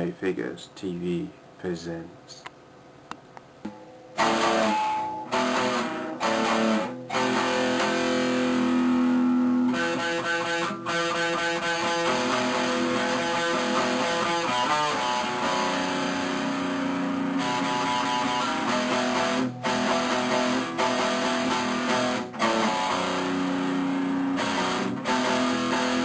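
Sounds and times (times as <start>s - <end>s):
guitar music: 3.7s - 26.0s.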